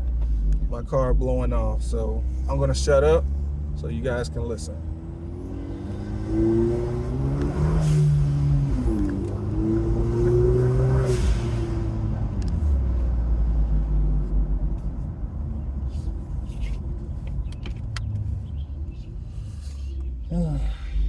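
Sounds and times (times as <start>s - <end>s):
car engine revving: 0.0s - 14.3s.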